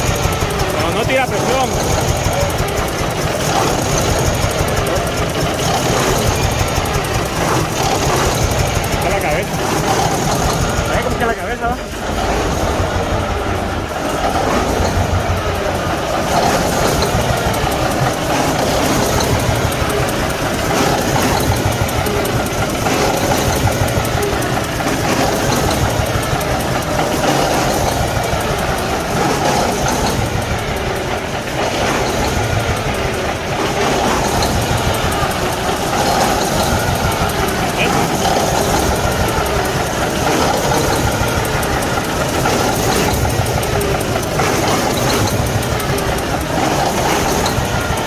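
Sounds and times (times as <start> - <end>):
misfiring diesel engine clatter: 0.0 - 48.0.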